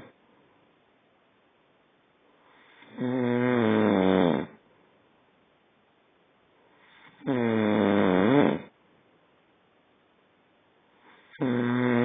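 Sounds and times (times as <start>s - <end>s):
quiet breathing: 2.2s - 3.4s, 6.5s - 7.4s, 10.8s - 12.0s
man snoring: 2.7s - 4.6s, 7.1s - 8.7s, 11.2s - 12.0s.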